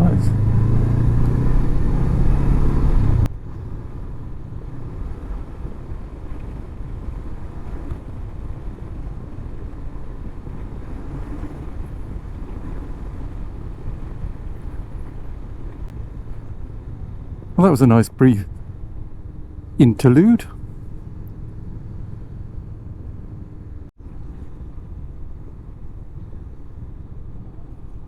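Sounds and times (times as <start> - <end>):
motorcycle engine rumble: 0.0 - 28.0
wind noise: 0.0 - 28.0.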